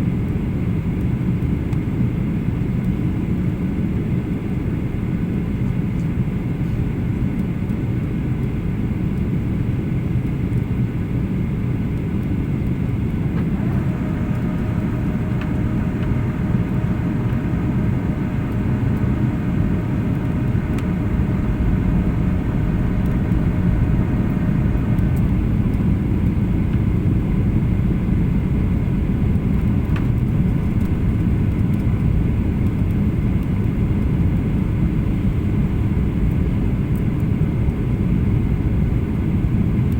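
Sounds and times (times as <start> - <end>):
airliner cabin engine rumble: 0.0 - 39.9
multi-tone whine: 12.2 - 39.0.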